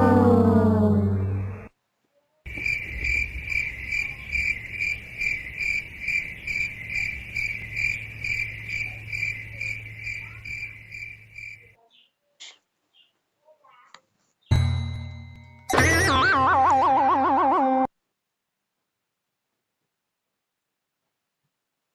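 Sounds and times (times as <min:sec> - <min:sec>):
crickets chirping: 0:02.5 - 0:11.7.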